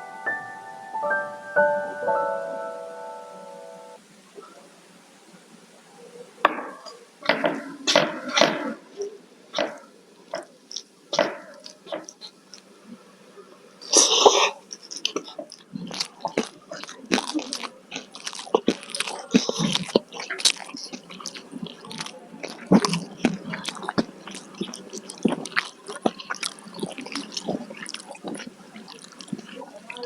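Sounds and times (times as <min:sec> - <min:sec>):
chewing with wet clicks: 0:09.6 - 0:12.7, 0:13.8 - 0:30.0
crunchy bite: 0:13.8 - 0:30.0.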